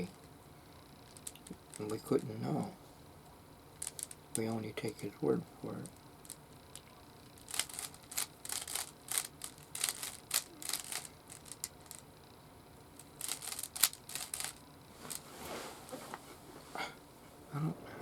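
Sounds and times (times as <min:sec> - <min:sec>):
puzzle cube clicking: 0:07.4 - 0:12.0, 0:13.2 - 0:14.6.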